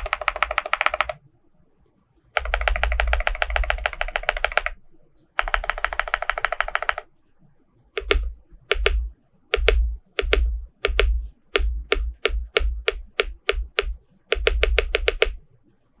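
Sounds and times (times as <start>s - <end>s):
mechanical keyboard keystrokes: 0.0s - 1.2s, 2.4s - 4.8s, 5.4s - 7.1s, 8.0s - 15.4s.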